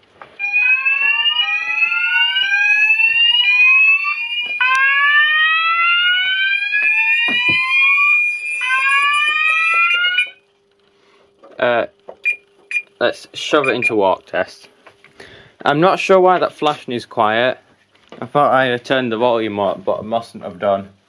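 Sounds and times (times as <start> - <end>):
fire alarm rising sweep tones: 0.4 - 10.5, 12.2 - 12.9, 13.6 - 14.0
steady high alarm tone: 0.4 - 10.5, 12.2 - 12.9, 13.5 - 14.0.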